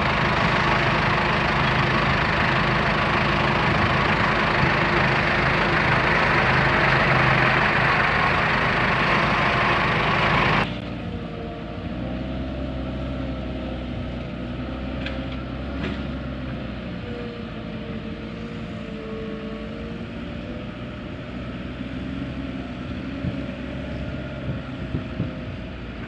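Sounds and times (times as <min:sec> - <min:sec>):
heavy diesel engine running: 0:00.0 - 0:11.7.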